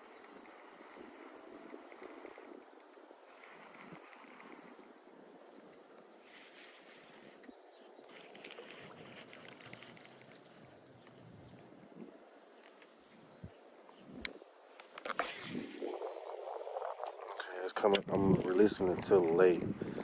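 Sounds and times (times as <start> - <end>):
faint rapid ticks: 0.0 - 11.3
steady outdoor hiss: 0.0 - 20.0.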